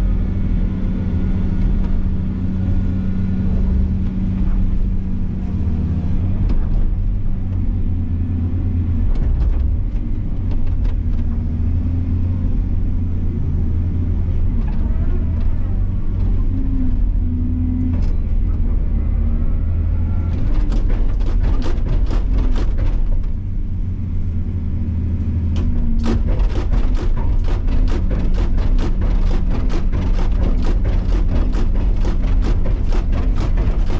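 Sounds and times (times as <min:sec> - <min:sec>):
heavy machine engine rumbling: 0:00.0 - 0:33.9
sharp knocks: 0:20.4 - 0:23.3, 0:25.6 - 0:33.9.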